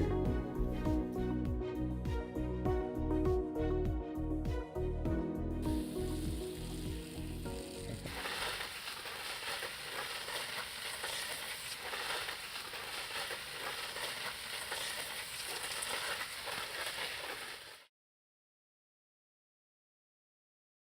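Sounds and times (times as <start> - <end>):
crackling hiss: 5.8 - 17.9.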